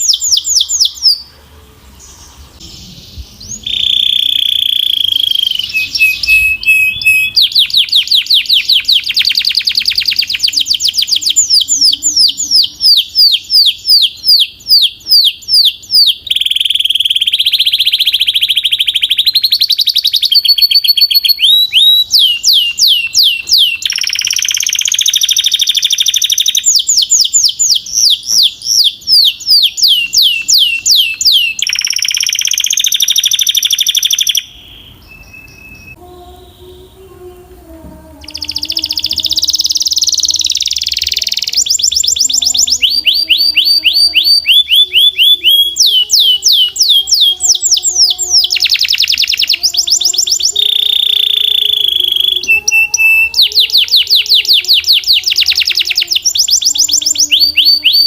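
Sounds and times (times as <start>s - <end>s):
canary singing: 0.0s - 58.0s.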